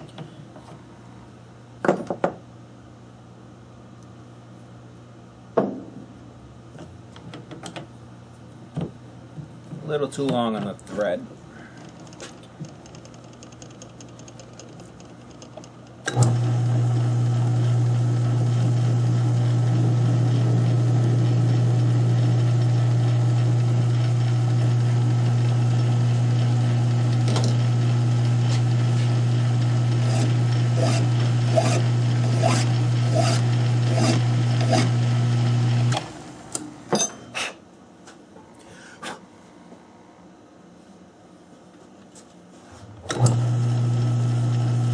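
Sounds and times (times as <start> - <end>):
knocks: 5.6 - 6.1
lathe motor humming: 16.2 - 36.5, 43.1 - 44.9.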